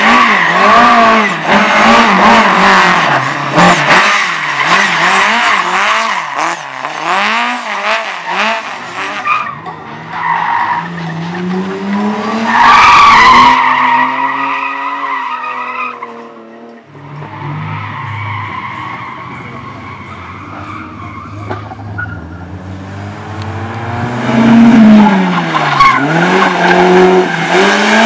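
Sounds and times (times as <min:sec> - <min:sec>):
race car engine revving: 0:00.0 - 0:28.0
tyres squealing: 0:17.0 - 0:22.5.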